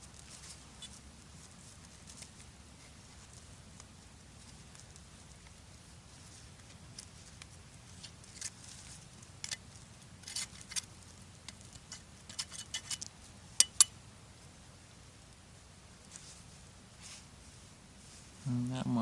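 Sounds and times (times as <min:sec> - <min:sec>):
twigs crackling and snapping: 0:00.0 - 0:14.0.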